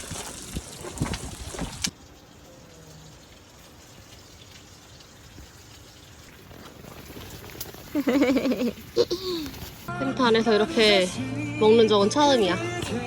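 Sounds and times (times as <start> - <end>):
rain patter on tent: 0.0 - 9.9.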